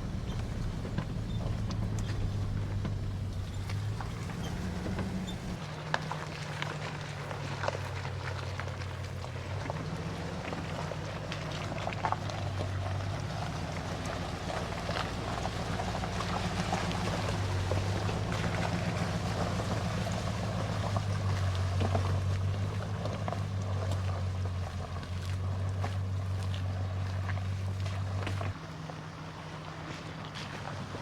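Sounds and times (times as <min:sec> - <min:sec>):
knocks and rattles: 0:00.0 - 0:05.6
road noise: 0:00.0 - 0:31.0
truck engine drone: 0:00.0 - 0:31.0.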